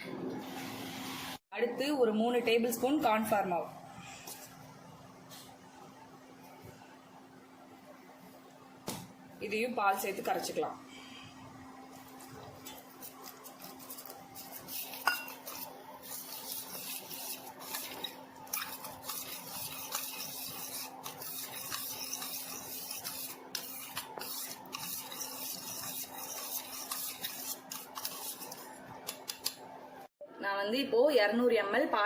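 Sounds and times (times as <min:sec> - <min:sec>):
spoon scraping and clinking bowl: 0:14.4 - 0:28.6.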